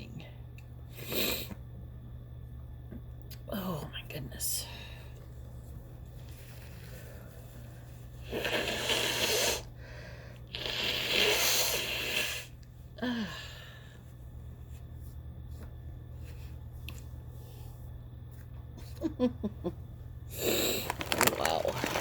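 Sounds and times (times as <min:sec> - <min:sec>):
woman blowing her nose: 0:08.3 - 0:09.7, 0:10.6 - 0:12.5.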